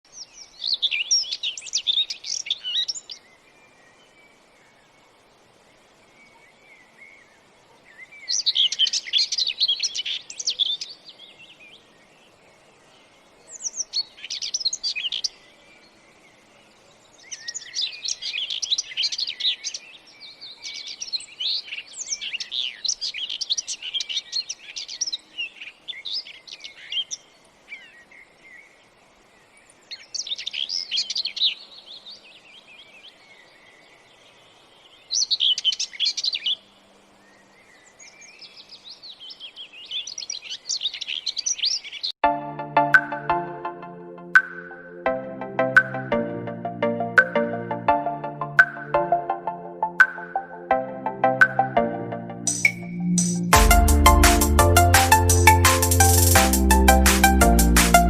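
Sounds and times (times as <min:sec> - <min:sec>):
small birds chirping: 0:00.0 - 0:42.2.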